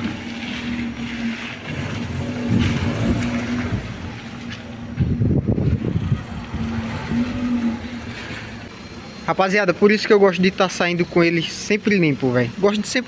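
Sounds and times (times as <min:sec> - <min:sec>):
rumbling on microphone: 0:00.0 - 0:08.7.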